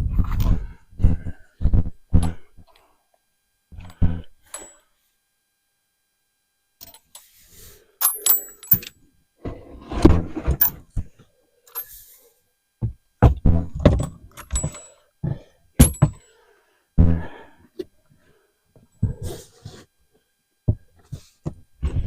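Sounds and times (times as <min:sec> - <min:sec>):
ringing metallic clinks: 0:08.0 - 0:08.9
tools clattering and thudding: 0:08.0 - 0:08.9, 0:13.3 - 0:15.0, 0:15.8 - 0:16.2.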